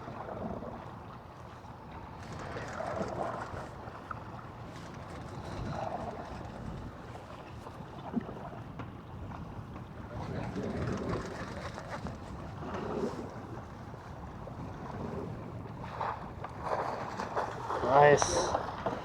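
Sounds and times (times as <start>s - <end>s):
water sloshing around boat: 0.0s - 19.0s
wind buffeting microphone: 4.4s - 7.5s, 8.2s - 19.0s.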